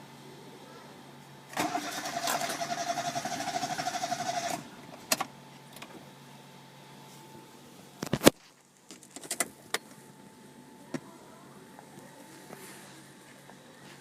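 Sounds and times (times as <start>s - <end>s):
starter motor cranking engine: 1.5s - 4.8s.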